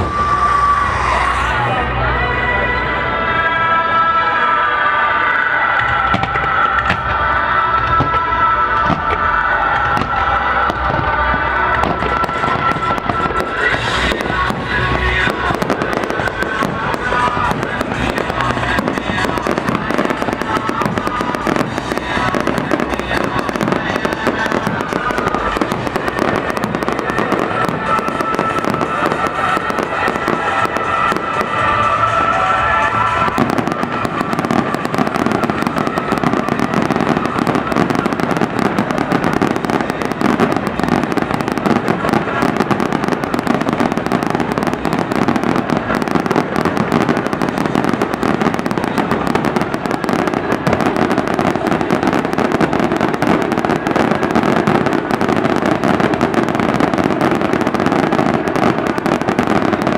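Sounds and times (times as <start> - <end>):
fireworks whistling: 0.0 - 1.7, 4.2 - 59.9
fireworks bangs and crackling: 0.0 - 59.9.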